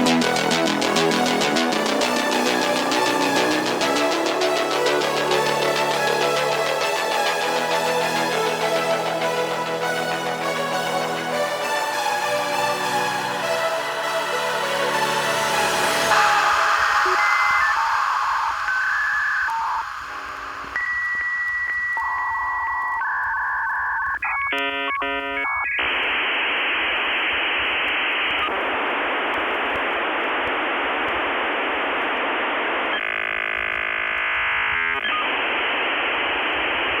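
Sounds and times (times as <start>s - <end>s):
warbling modem tones: 15.0s - 37.0s
modem tones: 15.9s - 37.0s.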